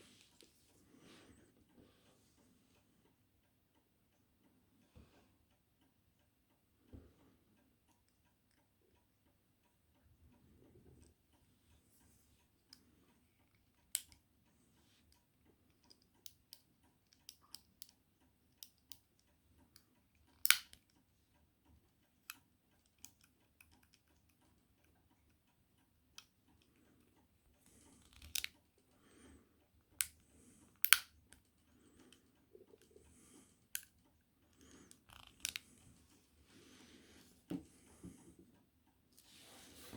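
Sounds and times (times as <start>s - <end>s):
quiet rustling: 0.0s - 3.2s, 24.4s - 39.9s
revolver metallic clicks: 30.8s - 31.2s.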